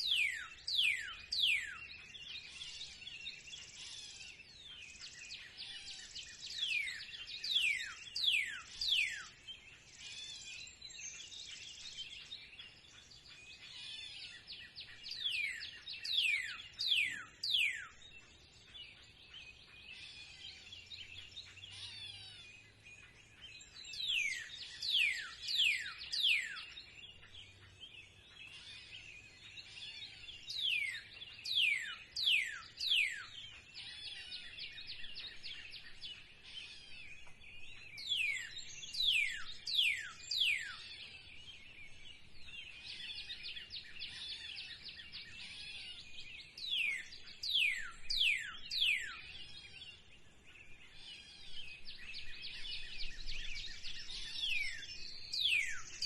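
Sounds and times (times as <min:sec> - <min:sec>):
birds chirping: 0:00.0 - 0:56.0.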